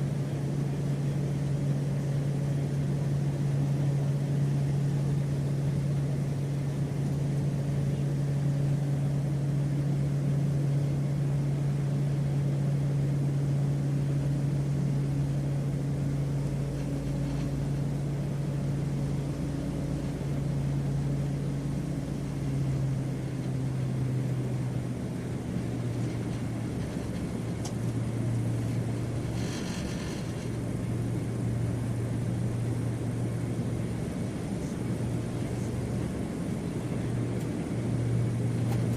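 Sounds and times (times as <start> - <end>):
airplane engines droning: 0.0 - 38.9.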